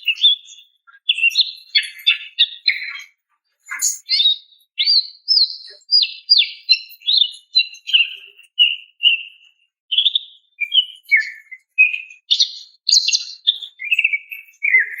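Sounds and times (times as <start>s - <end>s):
bird chirping call notes: 3.7s - 9.2s.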